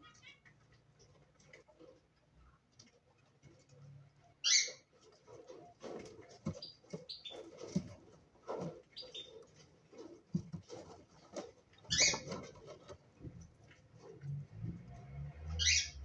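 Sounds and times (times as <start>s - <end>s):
cockatiels chirping: 4.4s - 4.8s, 6.5s - 7.8s, 8.9s - 9.6s, 11.8s - 12.5s, 15.6s - 16.0s
scratching and tapping: 4.8s - 15.6s.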